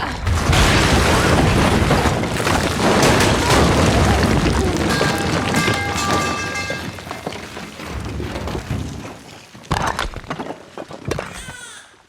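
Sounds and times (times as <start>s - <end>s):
explosion rumble: 0.0s - 9.3s.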